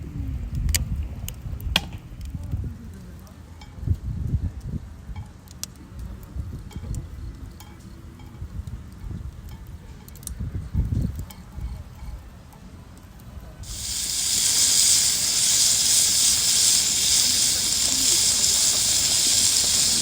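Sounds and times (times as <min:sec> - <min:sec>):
loud steady hiss: 0:13.6 - 0:20.0.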